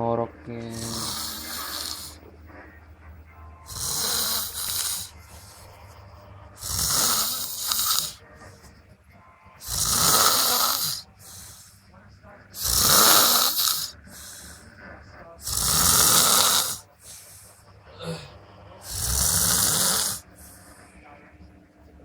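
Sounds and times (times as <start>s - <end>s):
person snoring heavily: 0.6s - 2.2s, 3.6s - 6.0s, 6.6s - 8.2s, 9.6s - 11.8s, 12.6s - 14.7s, 15.4s - 20.7s.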